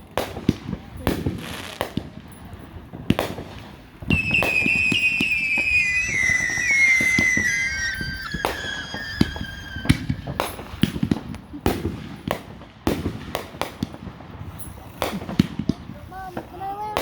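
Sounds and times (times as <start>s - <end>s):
fireworks crackling and popping: 0.0s - 17.0s
firework bang: 3.0s - 14.0s
high whistle falling in pitch: 4.1s - 10.7s.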